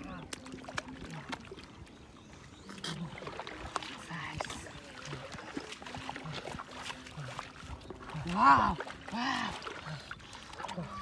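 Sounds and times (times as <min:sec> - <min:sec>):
hands splashing in muddy water: 0:02.7 - 0:11.0.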